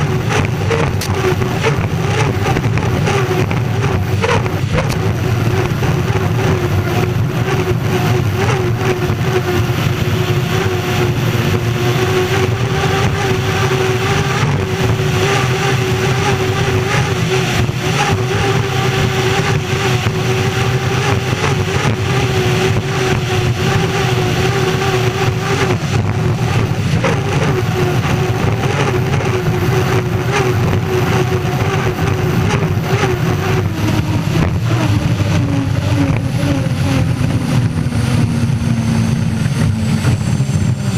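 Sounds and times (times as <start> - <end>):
gas turbine engine whine: 0.0 - 40.9
rush of noise: 0.0 - 40.9.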